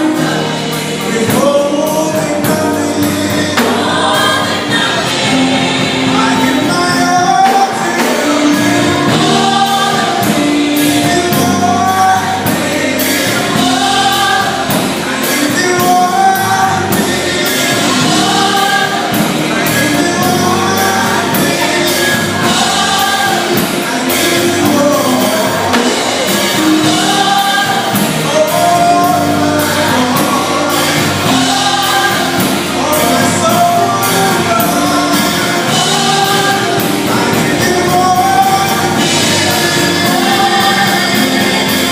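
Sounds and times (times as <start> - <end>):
gospel band playing: 0.0 - 41.9
singers singing: 0.0 - 41.9.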